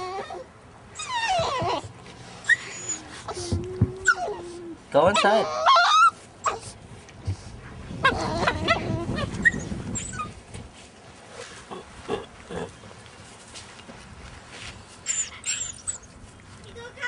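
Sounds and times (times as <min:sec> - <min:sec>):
puppies yelping: 0:00.0 - 0:06.6, 0:08.0 - 0:10.4, 0:15.1 - 0:16.2
puppies growling and grunting: 0:07.9 - 0:10.3.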